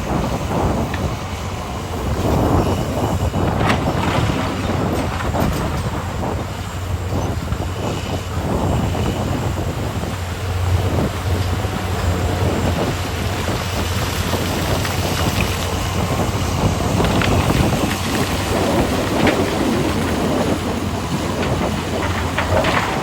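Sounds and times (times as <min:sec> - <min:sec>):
diesel engines droning: 0:00.0 - 0:23.0
short knocks and rattles: 0:19.1 - 0:23.0.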